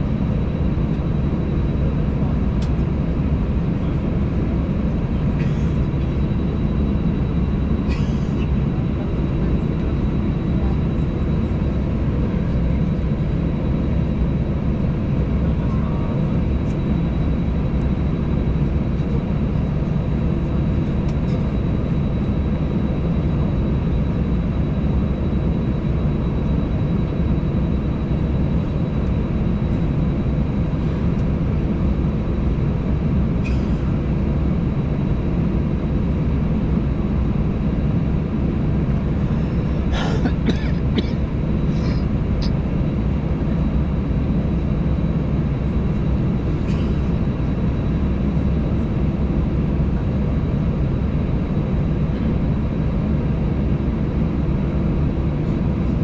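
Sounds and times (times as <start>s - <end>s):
jet engines idling: 0.0s - 56.0s
cabin air low rumble: 7.6s - 8.6s, 10.5s - 24.1s, 26.3s - 56.0s.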